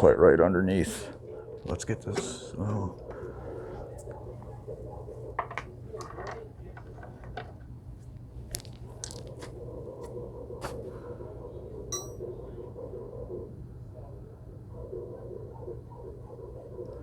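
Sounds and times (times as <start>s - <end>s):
steady low hum: 0.0s - 17.0s
metal and plastic parts clicking: 5.4s - 7.7s, 8.5s - 9.4s
brief metallic ring: 12.0s - 12.2s.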